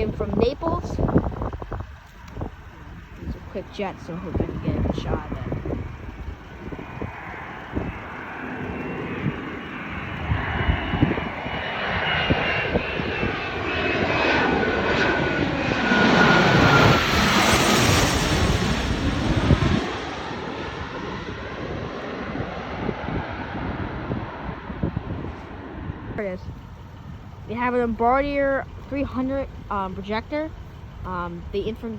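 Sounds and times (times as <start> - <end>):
jet flying overhead: 0.0 - 31.9
turbofan whine falling in pitch: 0.0 - 31.9.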